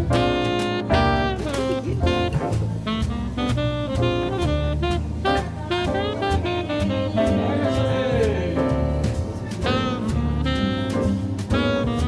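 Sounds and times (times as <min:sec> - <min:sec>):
bass: 0:00.0 - 0:12.0
guitar: 0:00.0 - 0:12.0
saxophone melody: 0:00.0 - 0:12.0.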